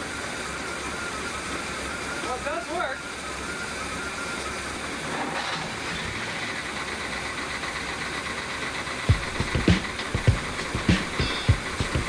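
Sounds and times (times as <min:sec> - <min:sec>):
boat engine idling: 0:05.8 - 0:12.0
regular low beat: 0:09.1 - 0:12.0.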